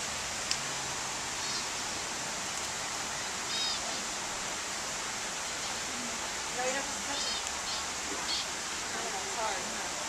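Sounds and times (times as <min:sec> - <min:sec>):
steady rushing water: 0:00.0 - 0:10.0
small bird chirping: 0:03.2 - 0:04.0, 0:07.1 - 0:08.5.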